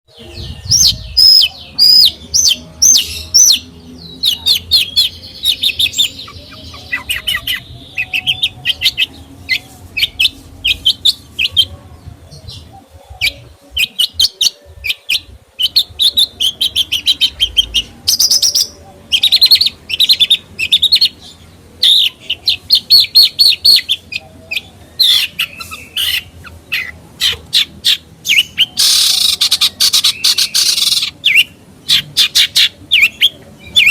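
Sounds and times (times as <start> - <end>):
songbird singing: 0.1 - 33.9.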